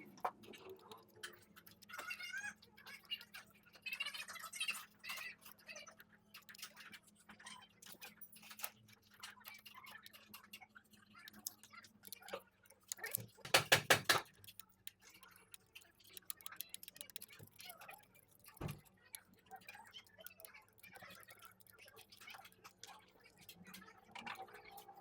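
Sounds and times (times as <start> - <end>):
hand tools clicking on metal: 12.9 - 18.6.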